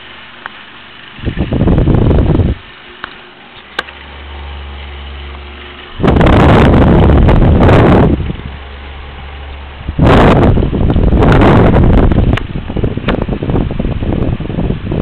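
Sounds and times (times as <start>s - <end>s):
fan humming: 0.0s - 15.0s
wind rumble on microphone: 1.2s - 2.7s, 3.8s - 15.0s.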